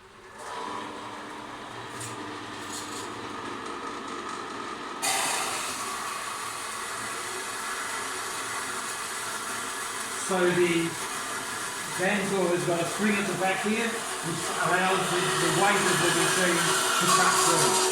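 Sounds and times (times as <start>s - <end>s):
metal bandsaw running: 0.3s - 17.9s
bandsaw blade cutting metal: 14.2s - 17.9s.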